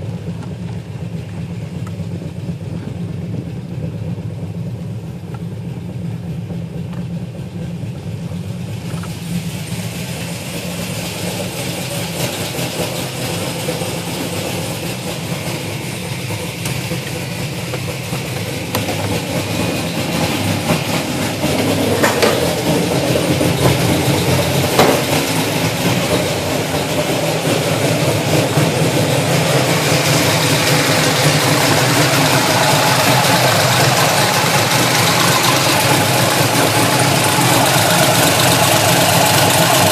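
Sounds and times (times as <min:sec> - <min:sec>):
engine idling: 0:00.0 - 0:39.9.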